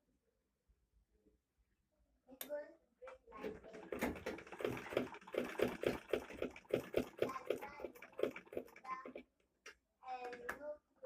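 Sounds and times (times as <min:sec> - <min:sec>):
manual sewing machine clacking: 0:03.4 - 0:09.2.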